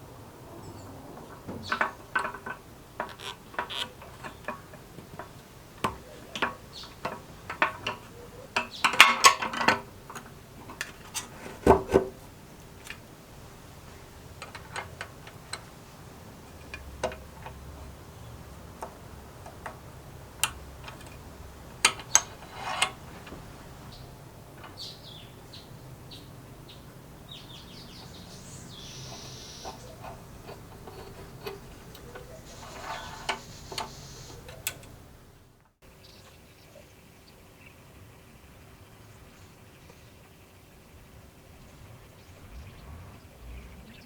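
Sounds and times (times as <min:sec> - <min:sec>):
tools and small parts clicking: 0:01.7 - 0:11.3, 0:14.4 - 0:15.7, 0:16.5 - 0:23.4, 0:29.6 - 0:35.0.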